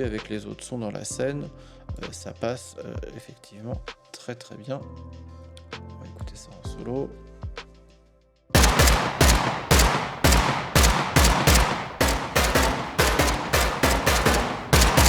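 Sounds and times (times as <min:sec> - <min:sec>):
bullet hits on metal targets: 0:08.6 - 0:15.0.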